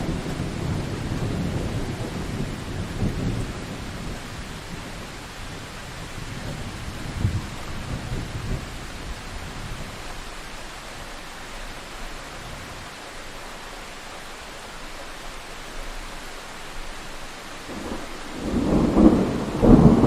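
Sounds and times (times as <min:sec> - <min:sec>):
thunder rolling: 0:00.0 - 0:10.0, 0:17.7 - 0:20.0
heavy rain hiss: 0:00.0 - 0:20.0.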